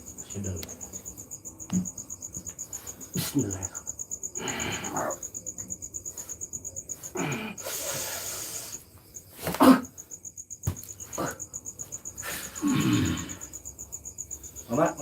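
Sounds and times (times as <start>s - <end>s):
crickets chirping: 0.0s - 15.0s
person breathing heavily: 7.1s - 8.8s.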